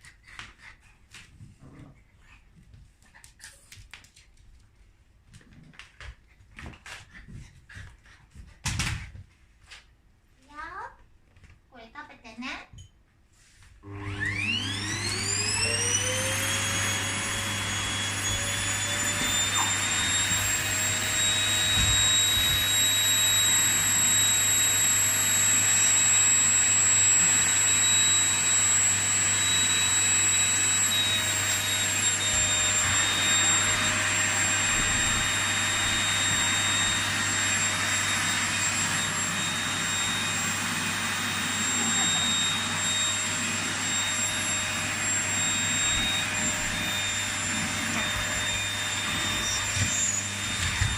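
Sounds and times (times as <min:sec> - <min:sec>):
vacuum cleaner motor running: 0:13.8 - 0:50.9.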